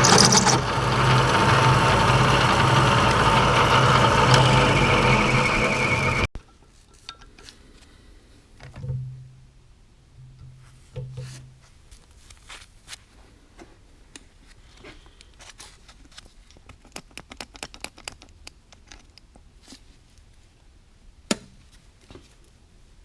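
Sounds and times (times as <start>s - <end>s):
tools and metal parts clinking: 0.0s - 0.6s
low machine hum: 0.0s - 6.3s.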